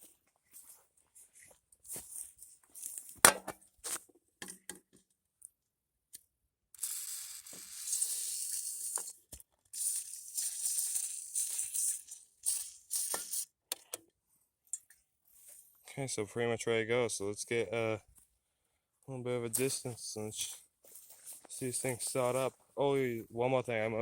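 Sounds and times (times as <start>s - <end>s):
aerosol can spraying: 6.8s - 9.2s, 9.8s - 13.5s.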